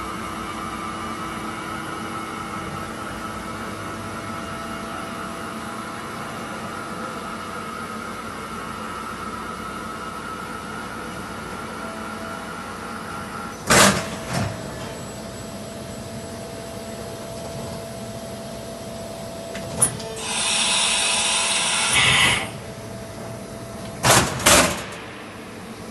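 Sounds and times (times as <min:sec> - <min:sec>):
hiss: 0:20.2 - 0:22.5
sharp mechanical knocks: 0:24.0 - 0:25.3.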